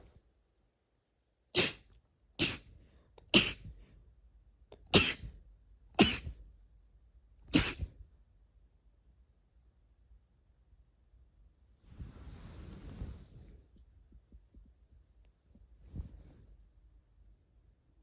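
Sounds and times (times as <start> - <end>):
sharp sneezes: 1.6 - 2.7, 3.3 - 3.7, 4.9 - 5.4, 6.0 - 6.4, 7.5 - 8.0.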